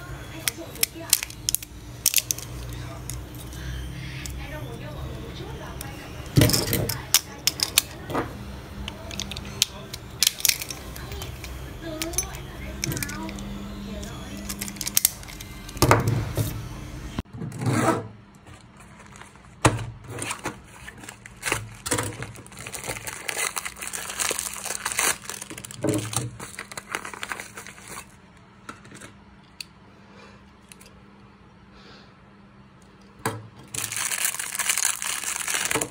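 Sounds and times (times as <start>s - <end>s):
plastic packaging crinkling and tearing: 9.0s - 15.8s, 18.4s - 28.2s, 33.7s - 35.9s.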